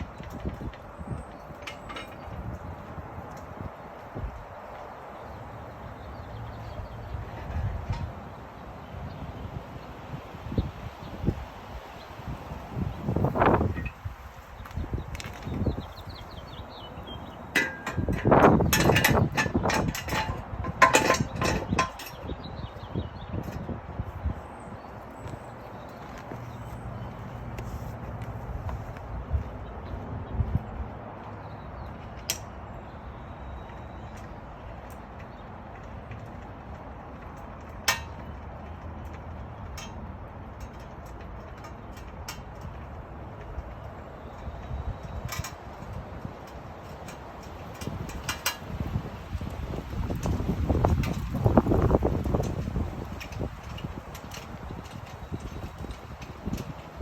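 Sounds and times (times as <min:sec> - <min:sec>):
metal jack clanking and scraping: 0:00.1 - 0:02.7, 0:17.5 - 0:22.4, 0:44.3 - 0:48.8
metal jack clinking: 0:17.5 - 0:22.3.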